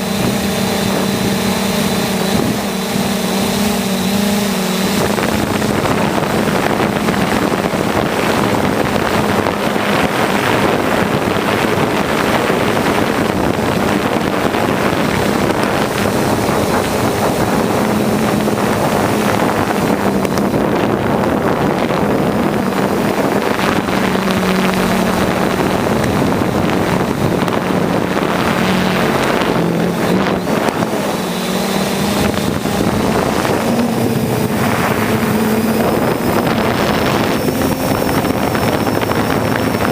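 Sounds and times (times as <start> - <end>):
drone propellers humming: 0.0 - 39.9
wind on microphone: 0.0 - 39.9.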